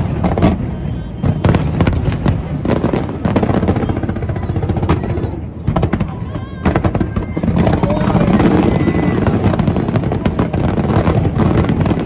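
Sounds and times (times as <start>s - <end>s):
fireworks bangs and crackles: 0.0s - 12.0s.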